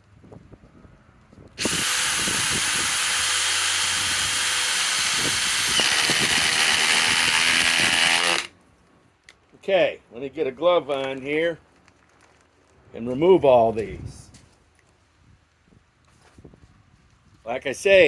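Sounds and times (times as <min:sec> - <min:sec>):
impact driver driving fastener: 0:01.6 - 0:08.5.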